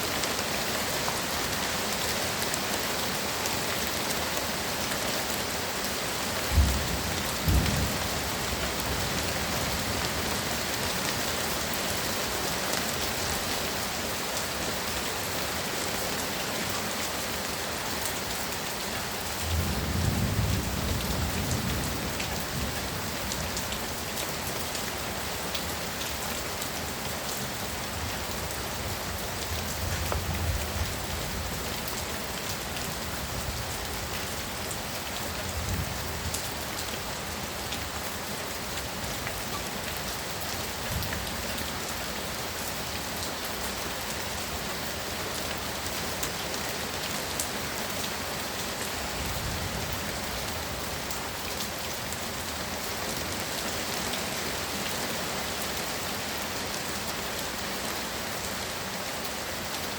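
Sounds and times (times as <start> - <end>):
heavy rain pouring: 0.0 - 59.9
thunder rumbles: 6.5 - 9.2.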